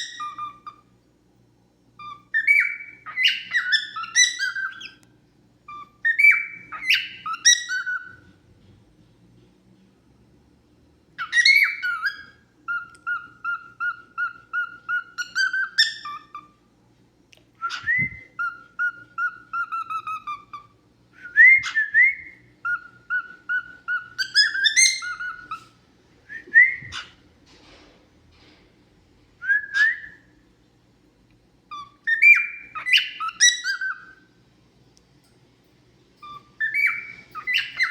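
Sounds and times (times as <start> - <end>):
cockatiel whistling song: 0.0 - 0.9, 2.0 - 8.4, 11.2 - 16.6, 17.6 - 27.2, 29.4 - 30.4, 31.7 - 34.3, 36.2 - 37.9.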